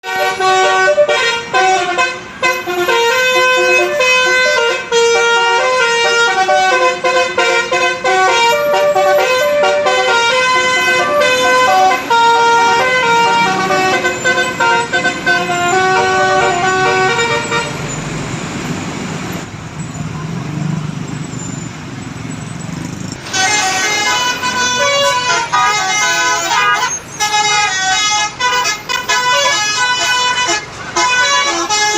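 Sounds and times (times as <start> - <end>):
musical air horn melody: 0.0 - 17.8, 23.2 - 31.9
low engine and road rumble: 0.0 - 31.9.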